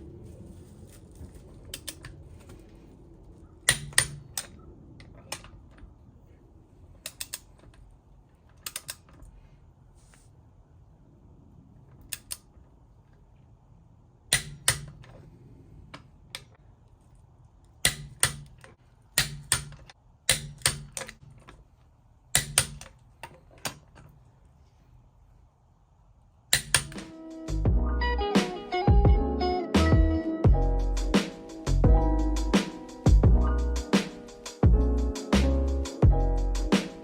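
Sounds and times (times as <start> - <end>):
ratchet wrench clicking: 3.7 - 4.5, 7.0 - 7.5, 17.8 - 21.2, 22.4 - 23.0, 26.5 - 27.1
music: 27.0 - 37.0.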